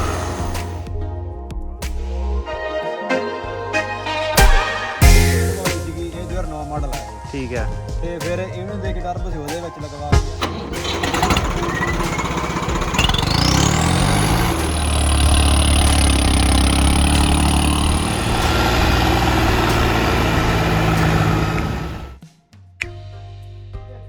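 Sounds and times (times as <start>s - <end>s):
tractor diesel engine revving: 0.0s - 0.8s, 10.2s - 22.2s.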